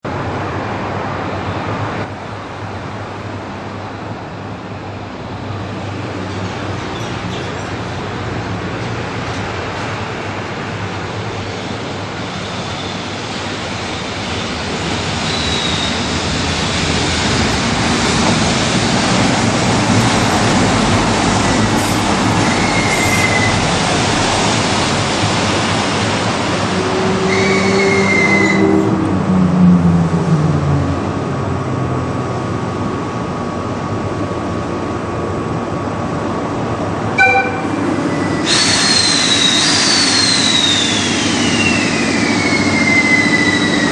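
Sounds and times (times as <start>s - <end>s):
train rolling slowly: 2.0s - 43.9s
wheel squeals: 15.2s - 16.1s, 21.8s - 23.7s, 38.1s - 43.9s.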